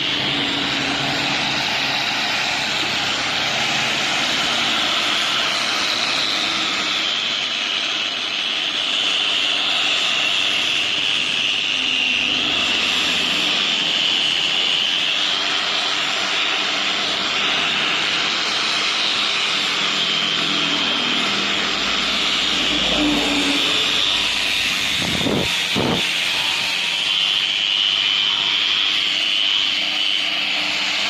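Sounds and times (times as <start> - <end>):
wire brush grinder on metal: 0.0 - 31.0.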